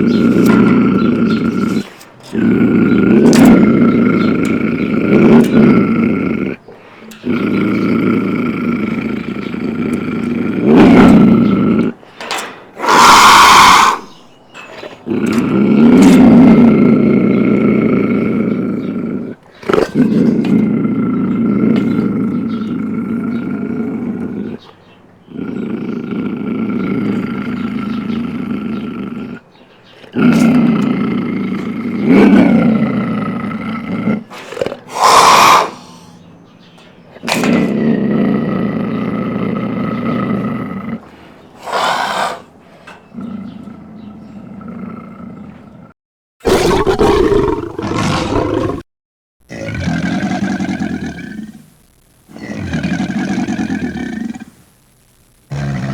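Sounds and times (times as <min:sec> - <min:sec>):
deep monster growls: 0:00.0 - 0:12.2, 0:14.8 - 0:24.7, 0:25.3 - 0:29.4, 0:30.0 - 0:36.2, 0:37.1 - 0:42.5, 0:43.1 - 0:48.9.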